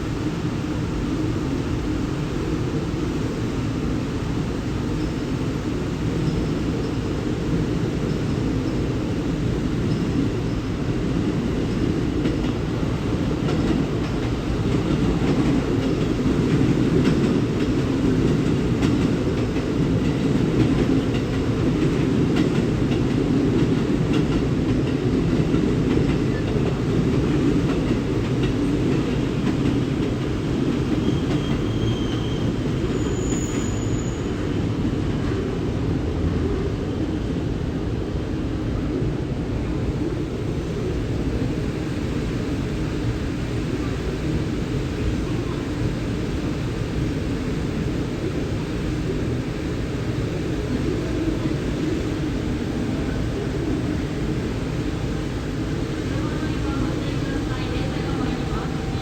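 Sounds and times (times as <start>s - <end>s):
train wheels rumbling on rails: 0.0s - 59.0s
high wheel squeal: 31.0s - 34.6s.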